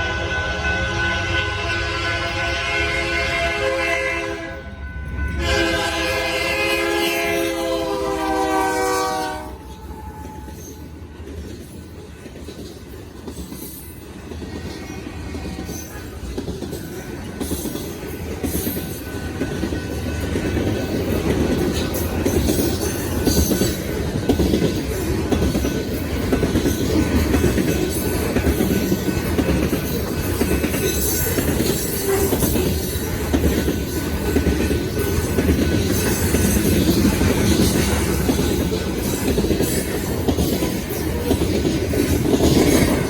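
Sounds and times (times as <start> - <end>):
train horn chord: 0.0 - 10.5
clickety-clack rail noise: 0.0 - 43.0
train rumbling past: 0.0 - 43.0.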